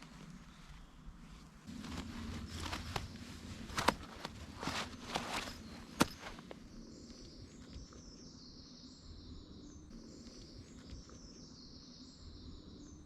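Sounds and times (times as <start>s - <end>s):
small birds singing: 0.0s - 13.0s.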